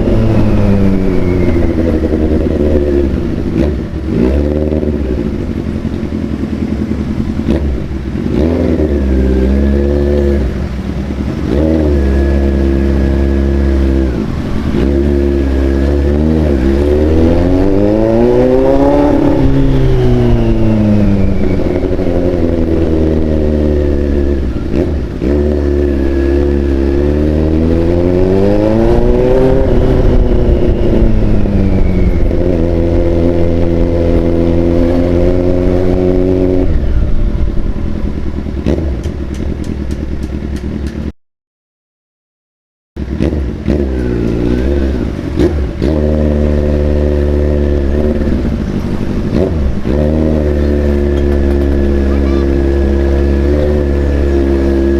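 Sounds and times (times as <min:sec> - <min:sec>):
motorcycle engine revving: 0:00.0 - 0:41.1, 0:43.0 - 0:54.9.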